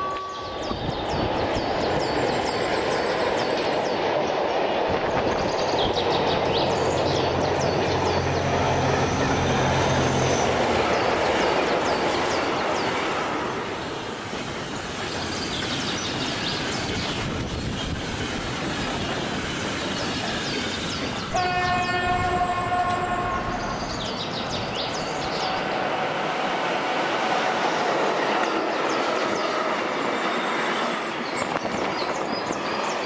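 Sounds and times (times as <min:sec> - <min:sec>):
train rumbling on rails: 0:00.0 - 0:33.0
train horn: 0:21.3 - 0:24.2.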